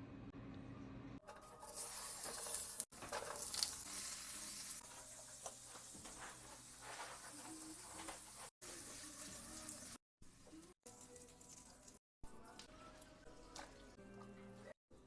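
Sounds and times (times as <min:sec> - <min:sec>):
food sizzling in a frying pan: 0:01.6 - 0:10.4.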